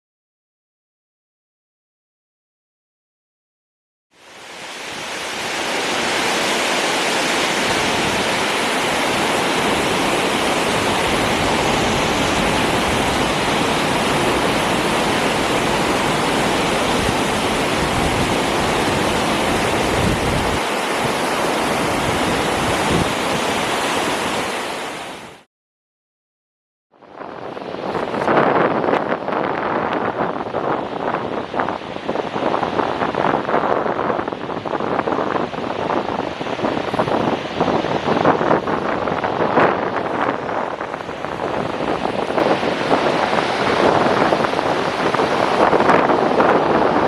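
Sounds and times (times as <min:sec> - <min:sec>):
waterfall rushing: 0:04.2 - 0:25.4, 0:39.0 - 0:47.0.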